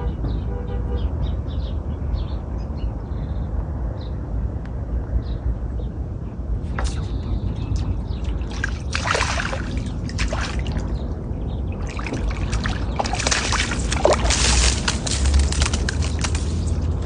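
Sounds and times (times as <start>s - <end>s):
steady low rumble: 3.4s - 17.0s
water splashing and sloshing: 6.6s - 17.0s.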